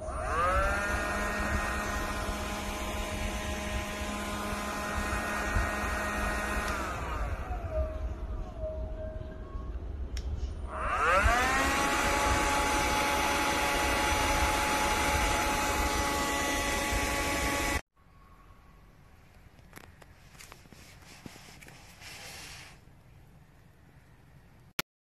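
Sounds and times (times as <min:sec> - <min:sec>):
vacuum cleaner motor whining: 0:00.0 - 0:09.3, 0:10.6 - 0:17.8
faint rustling: 0:19.2 - 0:23.9.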